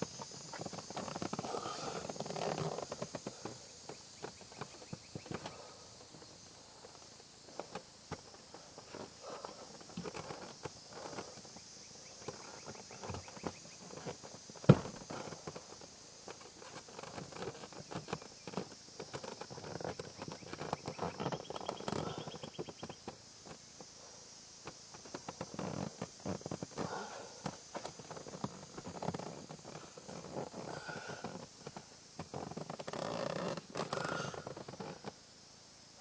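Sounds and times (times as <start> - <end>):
shuffling: 0.0 - 11.5, 24.9 - 35.1.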